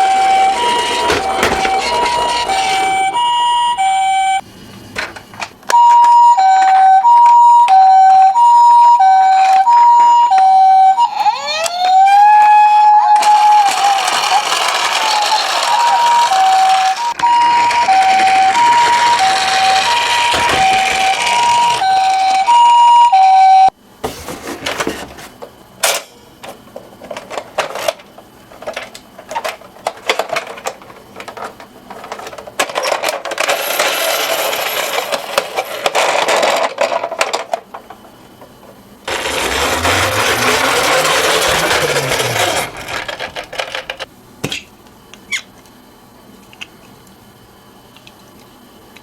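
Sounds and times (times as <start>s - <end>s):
toy cars rattling down a slope: 0.0s - 3.2s, 13.1s - 22.7s, 32.0s - 37.4s, 39.1s - 44.1s
two-tone ambulance siren: 0.0s - 4.4s, 5.7s - 23.7s, 39.1s - 43.4s.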